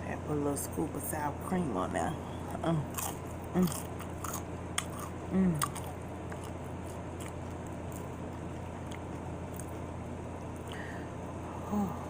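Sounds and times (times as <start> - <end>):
crunching and chewing: 2.8 - 10.8.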